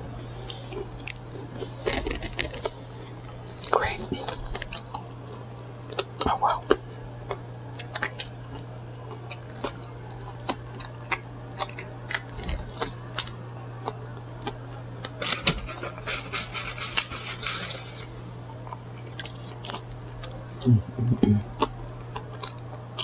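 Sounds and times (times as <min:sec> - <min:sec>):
steady low hum: 0:00.0 - 0:23.0
wrapper paper crinkling: 0:01.6 - 0:02.8, 0:15.2 - 0:18.4.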